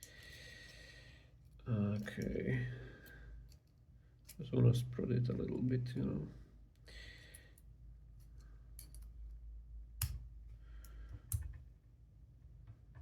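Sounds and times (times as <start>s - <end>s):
small metal clicks and scraping: 8.2s - 9.2s.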